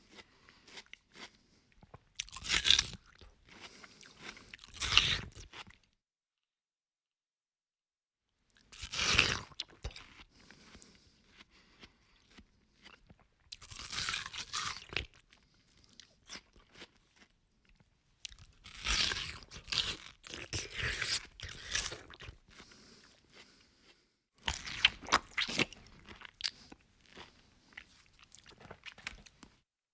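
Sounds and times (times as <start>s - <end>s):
person crunchy chewing: 0.0s - 5.9s, 8.6s - 29.5s.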